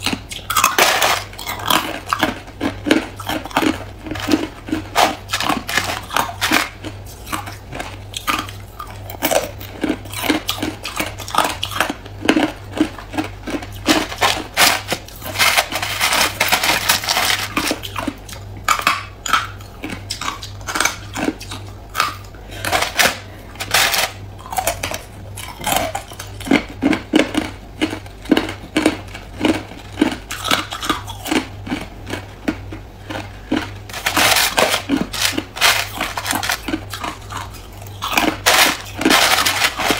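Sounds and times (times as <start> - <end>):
person crunching ice: 0.0 - 18.2, 33.0 - 39.9
ice bits clinking: 33.9 - 39.9.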